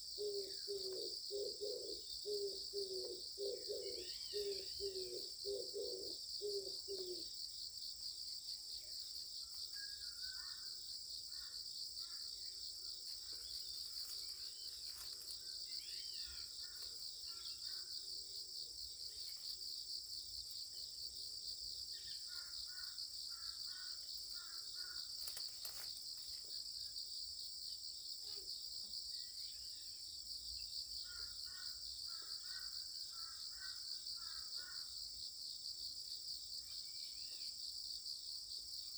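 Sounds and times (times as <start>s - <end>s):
insects chorus: 0.0s - 38.9s
low bird calls: 0.2s - 7.3s.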